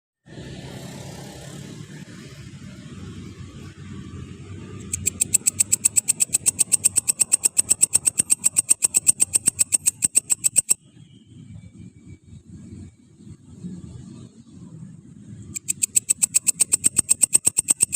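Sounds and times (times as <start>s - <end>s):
grasshopper stridulating: 4.8s - 10.8s, 15.5s - 17.9s.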